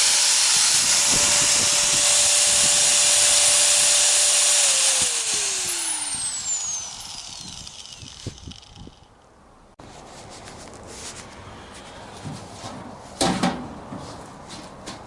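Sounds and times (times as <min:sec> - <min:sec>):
electric power tool running: 0:00.0 - 0:09.2
motor winding down: 0:00.0 - 0:09.2.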